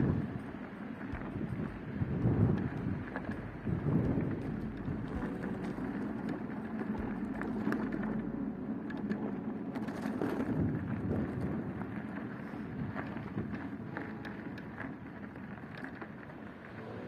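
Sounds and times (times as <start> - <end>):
vehicle engine running: 0.0 - 15.4.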